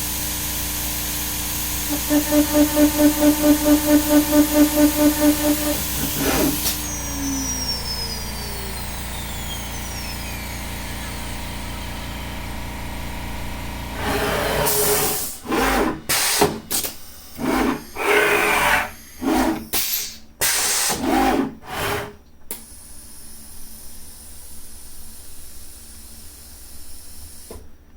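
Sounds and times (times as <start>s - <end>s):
compressed air hissing bursts: 0.0s - 7.7s
router hum with whine: 0.0s - 16.0s.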